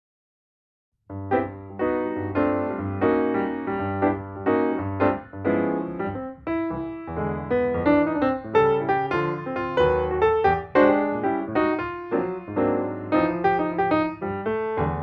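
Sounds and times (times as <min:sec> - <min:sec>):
instrumental music: 0:01.1 - 0:15.0.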